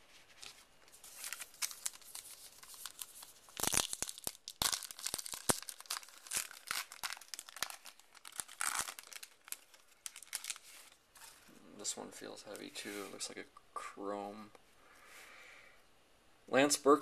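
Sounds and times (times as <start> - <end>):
wrapper tearing and crinkling: 0.4 - 11.0.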